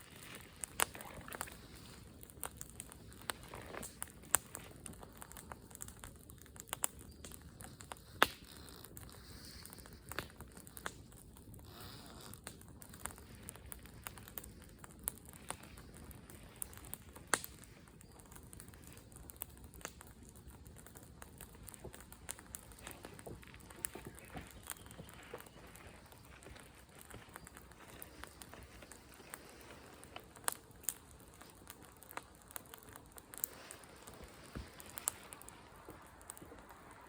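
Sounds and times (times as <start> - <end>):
bonfire crackling and popping: 0.0 - 37.0.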